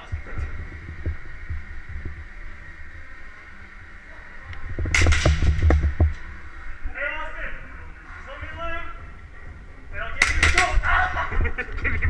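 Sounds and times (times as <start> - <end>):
low thuds of movement: 0.0 - 12.0
sharp clicks and knocks: 4.5 - 6.4, 10.2 - 10.8.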